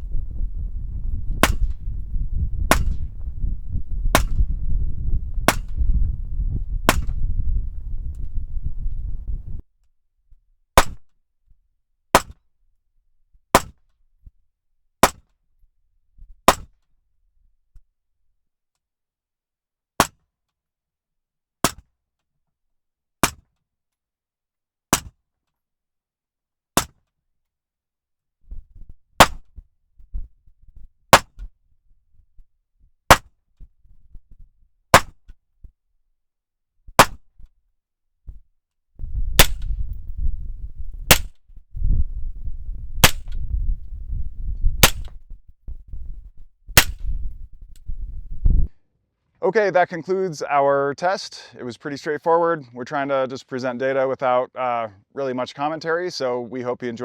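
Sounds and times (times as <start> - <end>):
suppressed gunshots: 1.4 - 1.9, 2.6 - 3.2, 4.1 - 4.5, 39.3 - 40.0, 41.1 - 41.3, 43.0 - 43.5, 44.8 - 45.2, 46.8 - 47.2.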